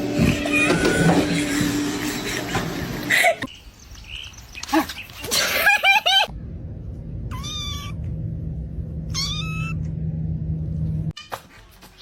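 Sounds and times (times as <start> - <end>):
steady low hum: 6.3 - 11.1
cat meowing: 9.1 - 9.8.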